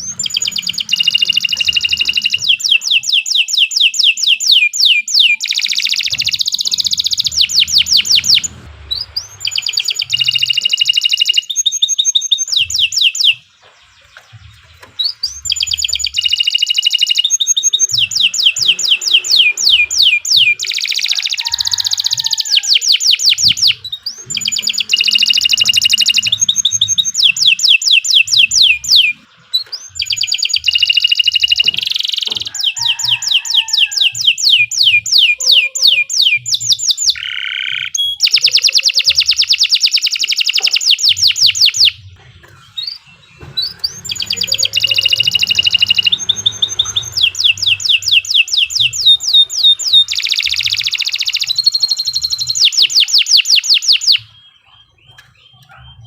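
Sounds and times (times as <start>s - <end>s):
canary singing trills: 0.0s - 56.0s.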